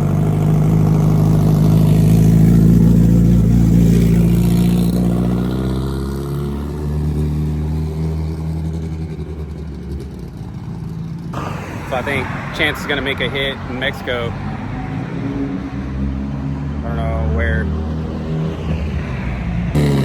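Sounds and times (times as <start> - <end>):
car engine running: 0.0 - 5.6.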